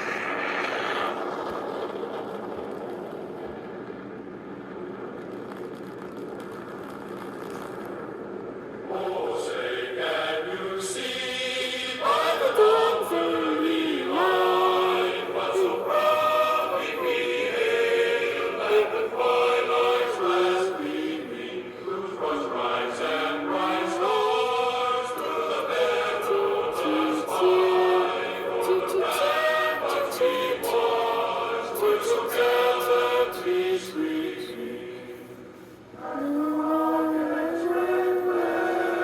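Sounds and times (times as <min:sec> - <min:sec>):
choir-like singing voices: 0:08.9 - 0:39.0.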